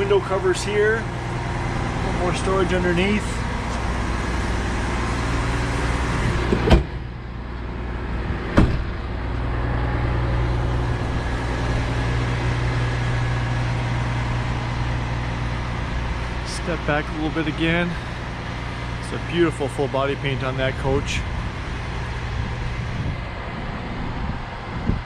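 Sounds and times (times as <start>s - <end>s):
low hum of machinery: 0.0s - 25.0s
storage bay doors banging shut: 8.5s - 9.0s.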